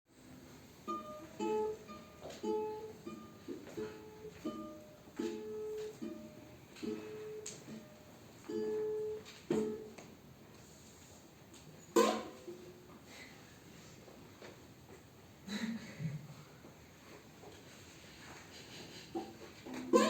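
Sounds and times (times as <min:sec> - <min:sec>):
plucked string melody: 0:00.7 - 0:09.9.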